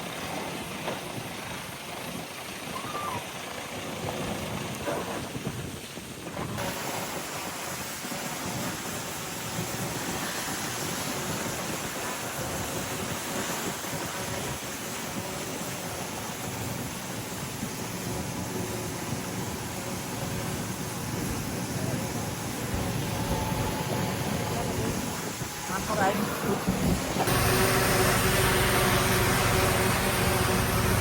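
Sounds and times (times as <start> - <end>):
hiss: 6.0 - 31.0
bulldozer rumbling roar: 19.8 - 31.0.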